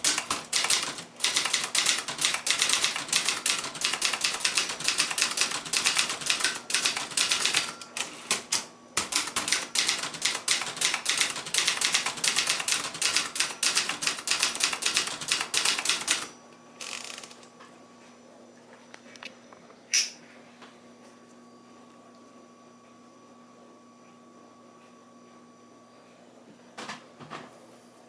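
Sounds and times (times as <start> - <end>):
manual typewriter typing: 0.0 - 17.4.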